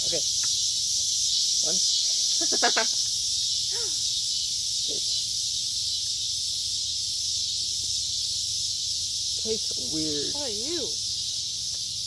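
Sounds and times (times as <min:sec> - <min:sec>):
high-pitched hiss: 0:00.0 - 0:12.0.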